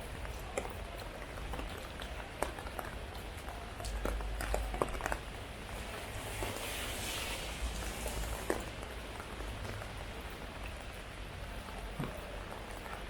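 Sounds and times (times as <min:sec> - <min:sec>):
heavy rain falling: 0:05.3 - 0:12.0.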